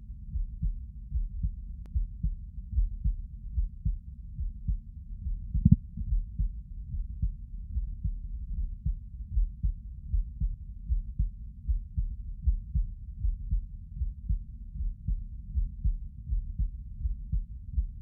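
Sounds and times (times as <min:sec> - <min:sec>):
muffled heartbeat thuds: 0:00.2 - 0:18.0.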